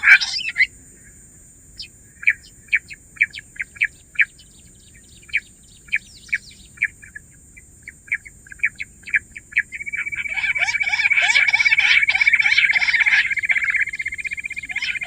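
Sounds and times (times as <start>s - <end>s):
quail whistled chirps: 0.0s - 0.7s, 8.1s - 15.0s.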